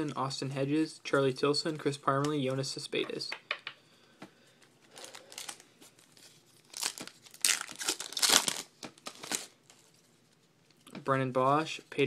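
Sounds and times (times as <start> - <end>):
wrapper tearing and crinkling: 4.9 - 9.9.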